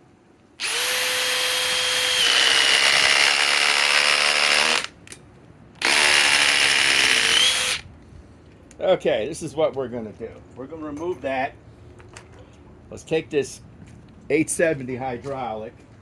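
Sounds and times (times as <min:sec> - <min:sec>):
cordless impact driver driving fastener: 0:05.8 - 0:07.8.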